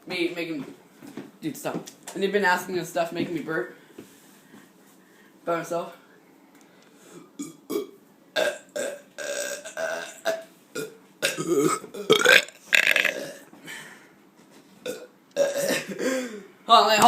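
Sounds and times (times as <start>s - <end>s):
man burping: 7.4s - 13.5s, 14.8s - 16.4s.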